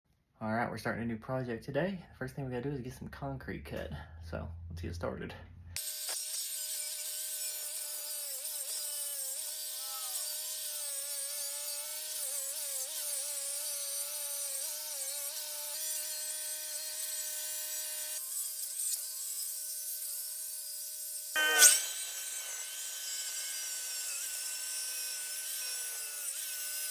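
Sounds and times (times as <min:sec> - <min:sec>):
power saw cutting concrete: 0:05.8 - 0:26.9.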